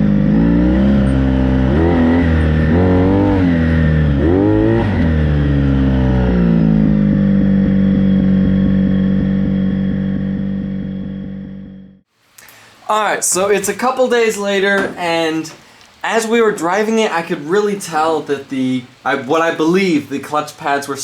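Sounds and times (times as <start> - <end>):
motorcycle engine revving: 0.0 - 12.1.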